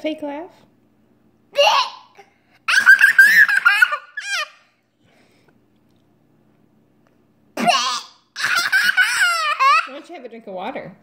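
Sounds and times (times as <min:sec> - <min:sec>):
young child laughing: 0:02.7 - 0:04.6, 0:07.6 - 0:10.0.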